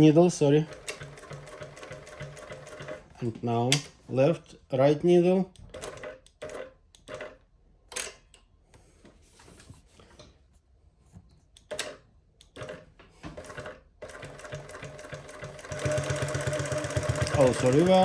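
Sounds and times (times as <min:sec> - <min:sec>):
sewing machine stitching: 0:00.7 - 0:03.1, 0:05.7 - 0:07.4, 0:11.7 - 0:18.0.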